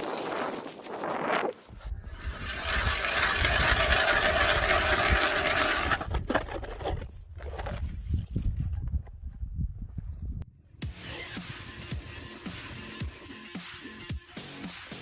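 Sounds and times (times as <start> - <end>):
ice auger grinding: 2.0 - 7.8.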